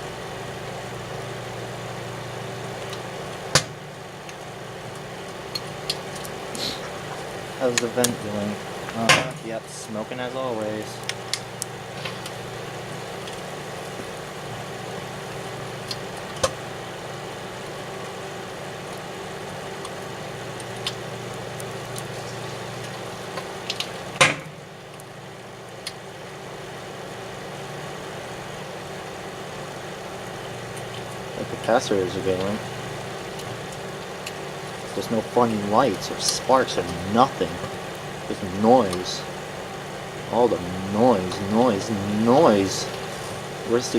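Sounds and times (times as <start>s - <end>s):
microwave oven humming: 0.0s - 43.9s
sharp electrical pops and cracks: 2.6s - 9.4s, 10.8s - 16.7s, 17.6s - 25.2s.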